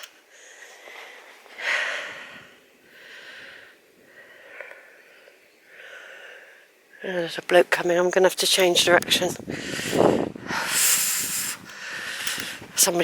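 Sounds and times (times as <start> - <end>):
person breathing: 0.2 - 7.0, 9.4 - 12.8.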